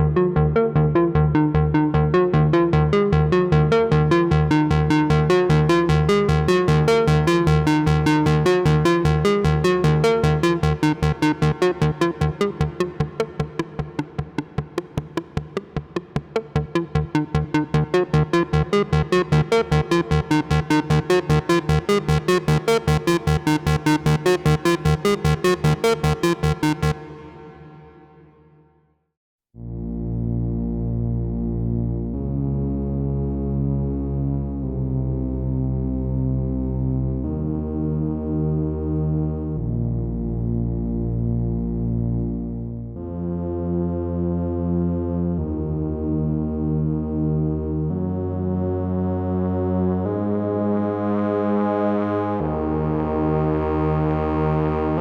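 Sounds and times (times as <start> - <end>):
synthesizer repeated short notes: 4.7 - 28.5.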